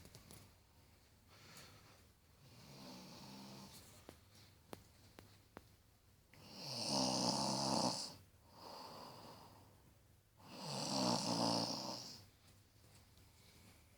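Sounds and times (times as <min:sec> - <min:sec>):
quiet breath: 0:01.0 - 0:05.2, 0:08.0 - 0:10.8, 0:13.2 - 0:13.9
woman snoring: 0:06.4 - 0:08.2, 0:10.4 - 0:12.2.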